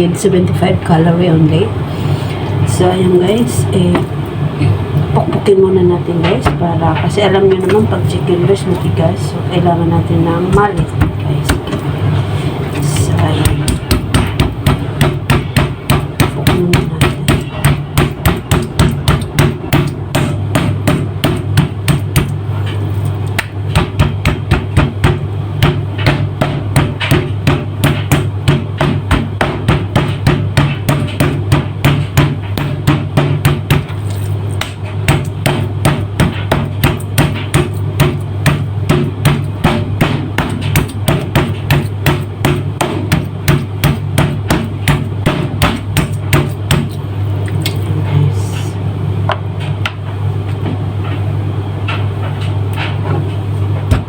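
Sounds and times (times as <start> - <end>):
steady low hum: 0.0 - 54.0
meat mallet pounding: 6.2 - 8.8, 10.3 - 12.2, 12.8 - 47.8, 51.9 - 54.0.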